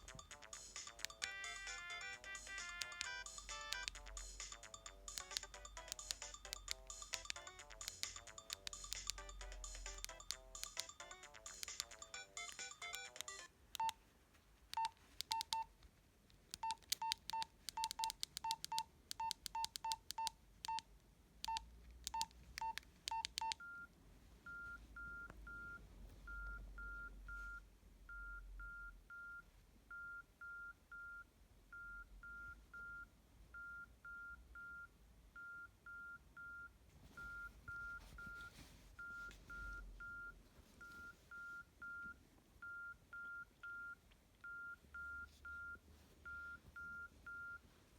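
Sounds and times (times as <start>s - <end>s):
phone key clicks with beeps: 0.0s - 1.8s, 2.6s - 4.1s, 4.7s - 14.0s, 16.5s - 23.6s.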